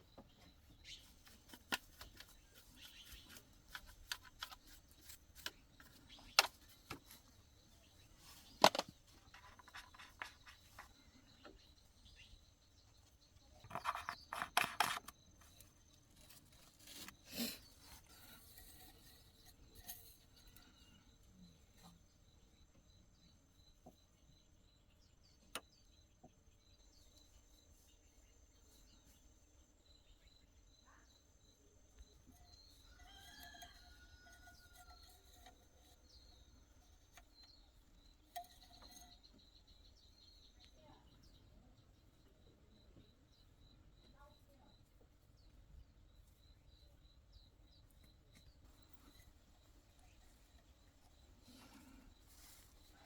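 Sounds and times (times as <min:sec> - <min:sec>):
small parts clicking and knocking: 0:01.2 - 0:07.3, 0:08.6 - 0:11.0, 0:13.6 - 0:17.1.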